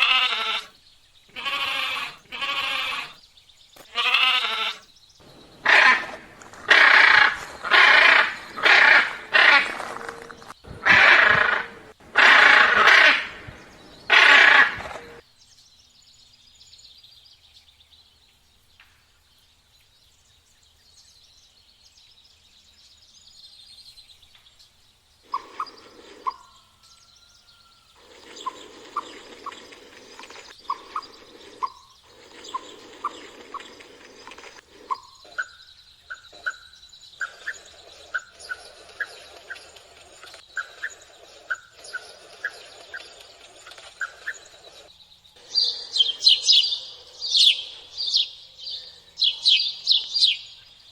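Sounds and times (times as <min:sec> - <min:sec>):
loud animal calls: 0:00.0 - 0:03.2, 0:03.8 - 0:15.2, 0:25.3 - 0:26.8, 0:28.0 - 0:39.8, 0:45.4 - 0:50.5.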